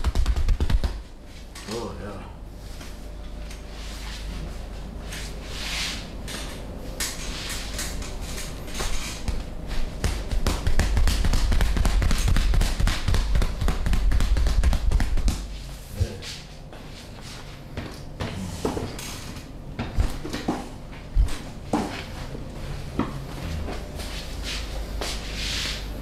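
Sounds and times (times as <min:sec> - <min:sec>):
fast taps and thumps on body: 0:00.0 - 0:01.1, 0:09.2 - 0:15.5.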